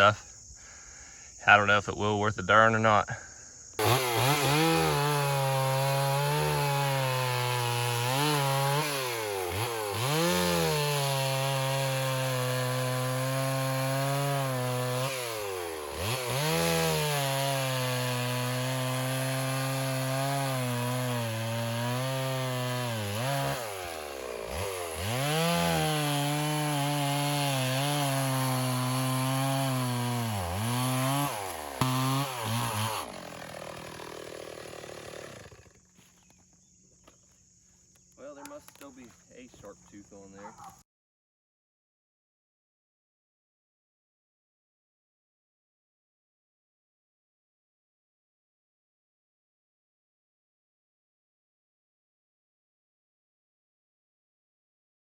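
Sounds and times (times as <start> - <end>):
chainsaw cutting wood: 3.8 - 40.8.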